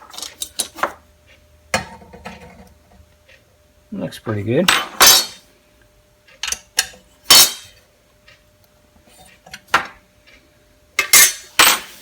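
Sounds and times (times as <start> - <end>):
metal tools clanking: 7.3 - 7.7, 11.0 - 12.0.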